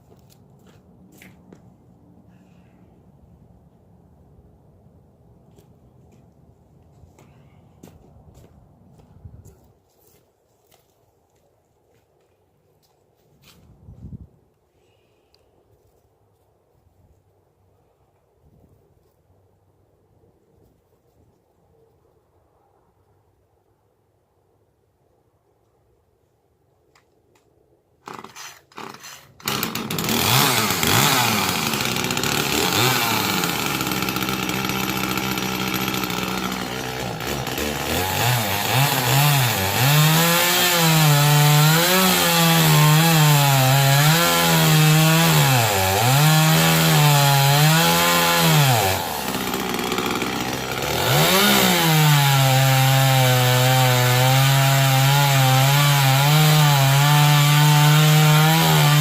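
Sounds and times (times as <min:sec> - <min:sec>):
chainsaw cutting wood: 0:28.0 - 0:59.0.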